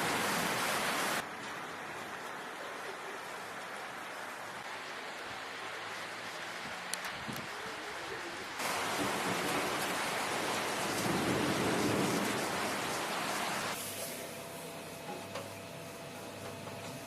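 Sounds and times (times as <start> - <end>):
heavy rain hissing: 0.0 - 15.0.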